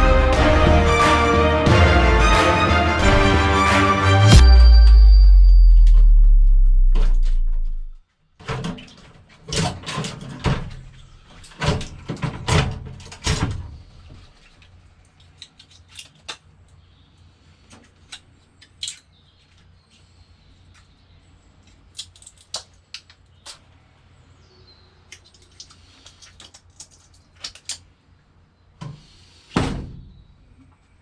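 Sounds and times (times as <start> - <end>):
music held low note: 0.0 - 8.0.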